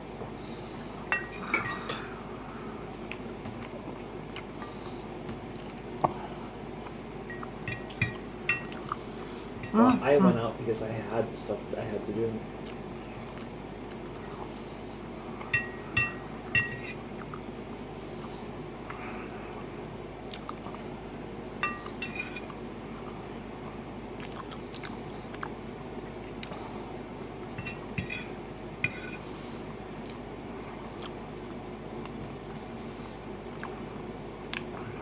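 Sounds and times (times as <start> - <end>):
utensil clinking against dish: 1.1 - 2.0, 7.3 - 8.8, 15.5 - 17.0, 21.6 - 22.5, 27.6 - 29.2
faint chewing: 3.0 - 7.6, 12.6 - 14.6, 16.9 - 17.5, 18.9 - 20.8, 24.2 - 25.6, 30.0 - 30.2, 30.8 - 32.4, 33.5 - 35.0.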